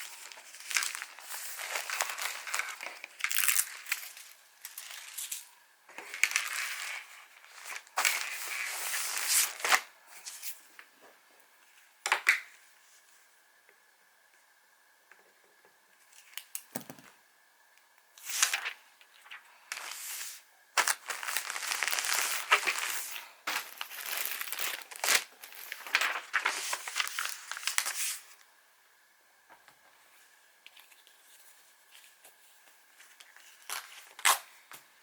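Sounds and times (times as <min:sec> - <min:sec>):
plastic packaging crinkling: 0:00.0 - 0:10.6, 0:18.2 - 0:28.4, 0:32.9 - 0:34.6.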